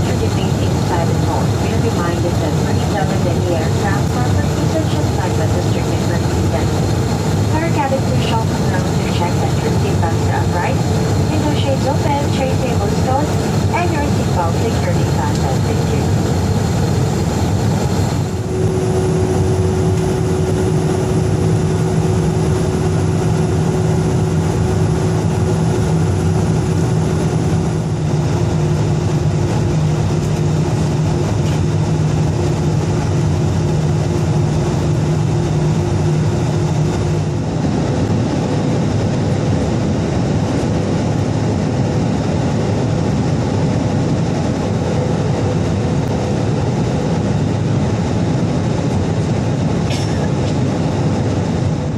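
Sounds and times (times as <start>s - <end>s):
airplane cabin engine and airflow noise: 0.0s - 51.9s
low hum: 0.0s - 51.9s
rough rumble: 16.6s - 34.2s.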